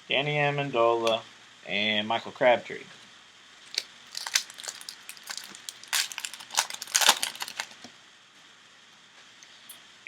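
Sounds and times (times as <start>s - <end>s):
foil wrapper tearing and crinkling: 3.6s - 7.8s.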